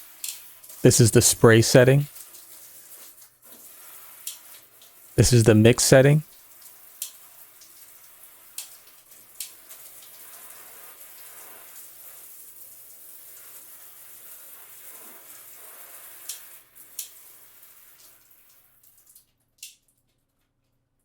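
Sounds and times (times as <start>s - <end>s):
shower head spraying water: 0.0s - 8.7s, 9.4s - 12.3s.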